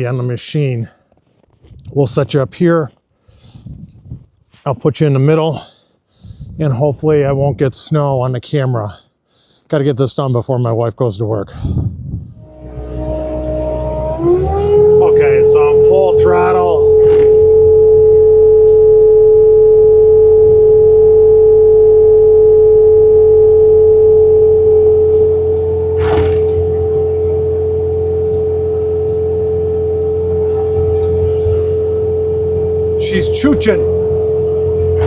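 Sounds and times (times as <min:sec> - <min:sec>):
low engine drone: 0:12.2 - 0:35.0
snowblower high whine: 0:12.3 - 0:35.0.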